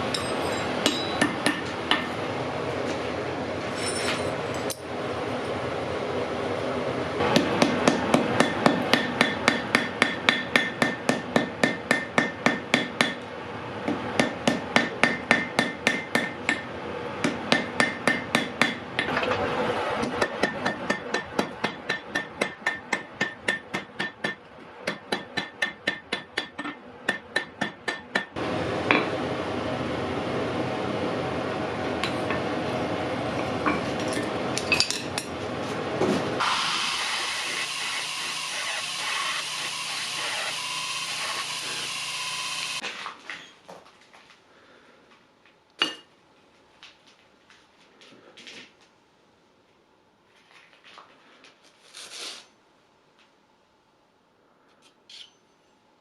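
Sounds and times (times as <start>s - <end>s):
steady background noise: 0.0s - 56.0s
hammer ringing on anvil: 0.1s - 2.1s, 7.4s - 13.2s, 14.2s - 16.7s.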